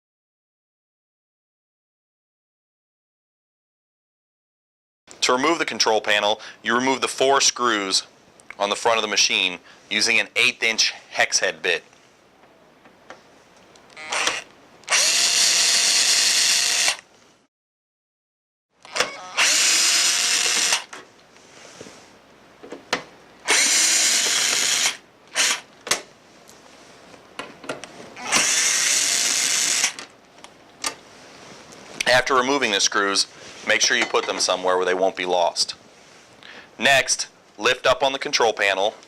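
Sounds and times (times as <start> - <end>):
drill trigger blips: 13.9 - 17.0, 18.8 - 20.9, 23.4 - 25.7, 28.2 - 30.0
power drill motor spinning: 13.9 - 17.1, 18.8 - 20.9, 23.4 - 25.7, 28.2 - 30.1.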